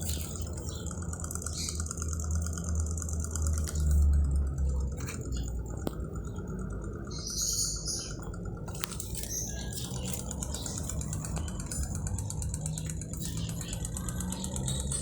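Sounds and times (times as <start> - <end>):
small fan motor whirring: 0.0 - 15.0
rattle of loose shaft: 8.1 - 15.0.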